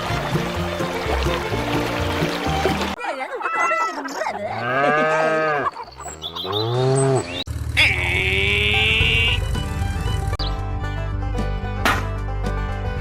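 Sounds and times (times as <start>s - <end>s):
background music: 0.0s - 3.0s, 8.8s - 13.0s
cattle mooing: 4.5s - 9.4s.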